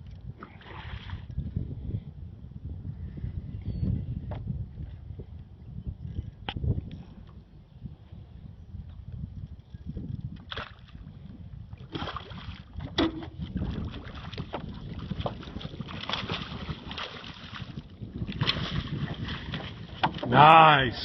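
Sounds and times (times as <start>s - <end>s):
wind rumble on microphone: 0.0s - 21.0s
water splashing against a boat: 0.2s - 1.4s, 10.2s - 21.0s.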